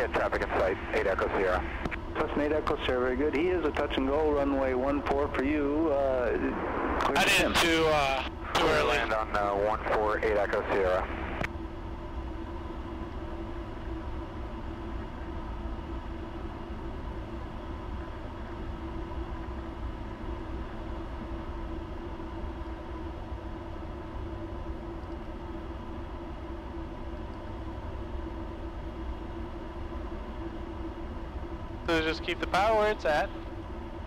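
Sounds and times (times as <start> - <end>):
radio exchange: 0.0 - 11.4, 31.9 - 33.4
plane engine and propeller drone: 0.0 - 34.0
radio click: 1.6 - 2.0.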